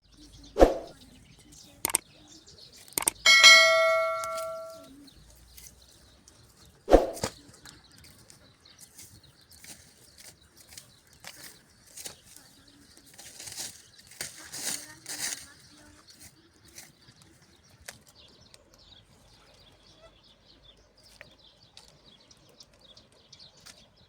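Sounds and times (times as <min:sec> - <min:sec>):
faint small clicks: 0:01.5 - 0:02.0, 0:02.8 - 0:03.2
sharp knocks: 0:03.0 - 0:04.8
ringing metal clang: 0:03.3 - 0:04.9.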